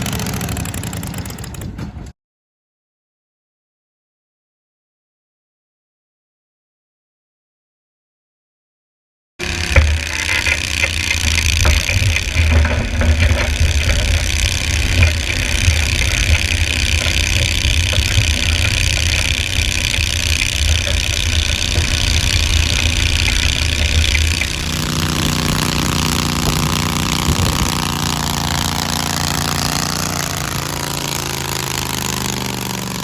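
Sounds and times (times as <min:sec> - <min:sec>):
garden tractor engine running: 0:00.0 - 0:02.1, 0:09.4 - 0:33.0.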